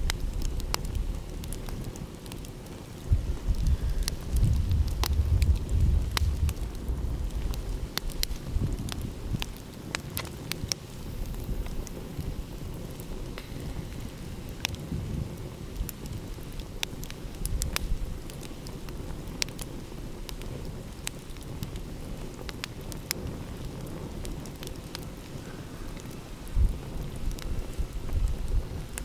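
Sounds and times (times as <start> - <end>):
wood fire crackling and popping: 0.0 - 29.0
low rumble: 3.1 - 9.4.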